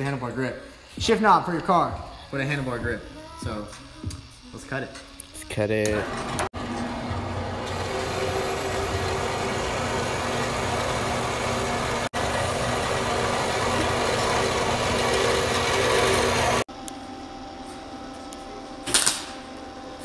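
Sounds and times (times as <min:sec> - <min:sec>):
power tool cutting steel tube: 0:05.9 - 0:16.7.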